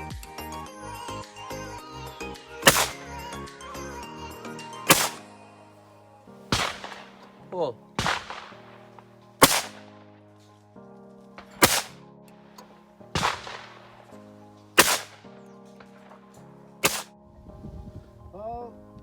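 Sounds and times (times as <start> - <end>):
background music: 0.0 - 19.0
shotgun shots: 2.6 - 3.0, 4.9 - 5.3, 6.5 - 7.4, 8.0 - 10.1, 11.4 - 12.0, 13.2 - 14.2, 14.8 - 16.2, 16.8 - 17.1.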